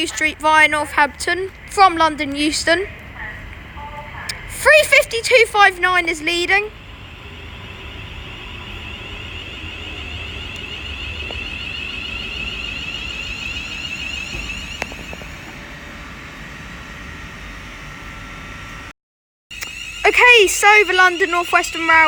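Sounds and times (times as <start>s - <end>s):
electric train whine and rumble: 0.0s - 18.9s, 19.5s - 22.0s.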